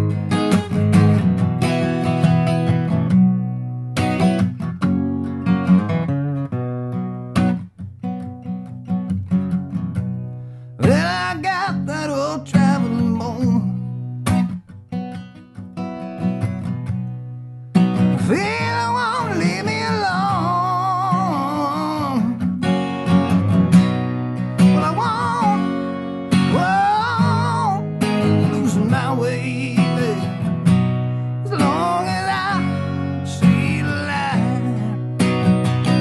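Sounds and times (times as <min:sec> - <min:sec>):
strummed acoustic guitar: 0:00.0 - 0:36.0
person singing: 0:10.8 - 0:13.8, 0:18.3 - 0:22.4, 0:24.6 - 0:30.5, 0:31.4 - 0:35.2.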